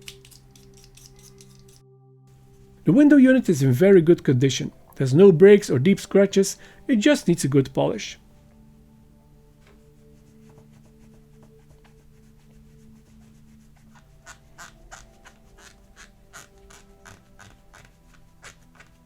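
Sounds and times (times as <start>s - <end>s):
faint background music: 0.0s - 19.0s
rubbing on plastic: 9.7s - 19.0s.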